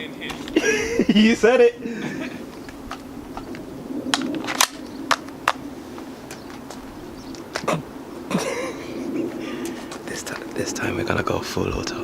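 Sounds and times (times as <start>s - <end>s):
airsoft rifle clicks and knocks: 2.8s - 5.6s.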